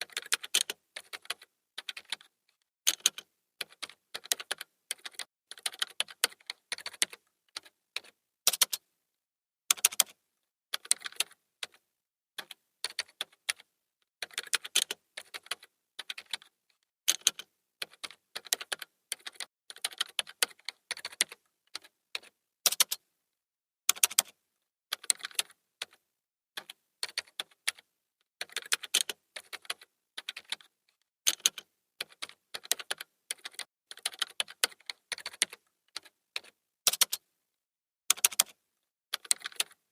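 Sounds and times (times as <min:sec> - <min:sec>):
computer keyboard key clicks: 0:09.7 - 0:10.1, 0:36.9 - 0:37.2, 0:38.1 - 0:38.5.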